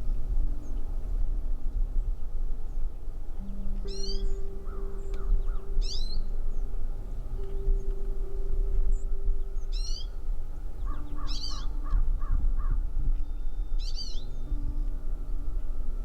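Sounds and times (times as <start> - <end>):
steady low rumble: 0.0 - 16.0
harsh high bird calls: 10.8 - 12.8.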